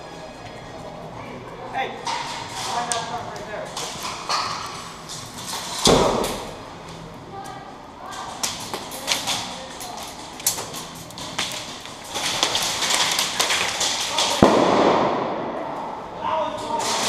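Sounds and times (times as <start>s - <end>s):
airsoft guns firing: 12.1s - 16.0s
loud sharp crack: 12.1s - 16.0s.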